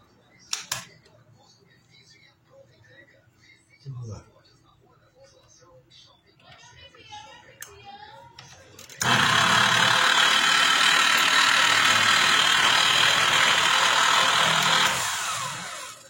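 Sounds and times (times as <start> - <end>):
angle grinder running: 9.0 - 16.0.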